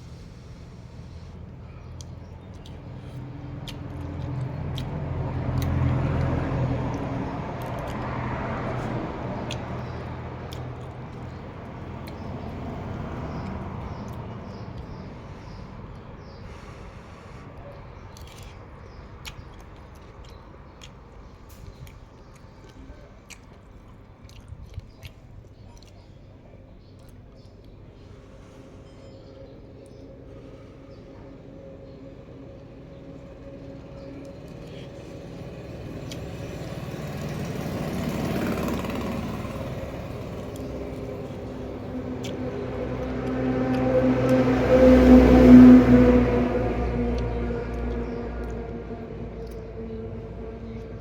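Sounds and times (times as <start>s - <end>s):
motor engine running: 0.0s - 15.5s, 30.3s - 45.2s
person chewing crunchy food: 0.0s - 17.4s, 18.0s - 26.2s, 34.0s - 44.5s.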